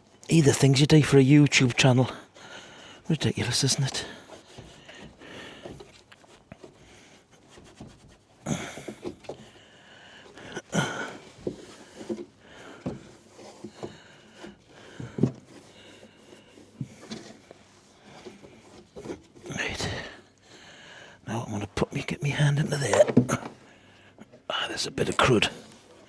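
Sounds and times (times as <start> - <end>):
man breathing hard: 2.3 - 3.1, 19.8 - 21.2
handling knocks and rustles: 11.1 - 19.5.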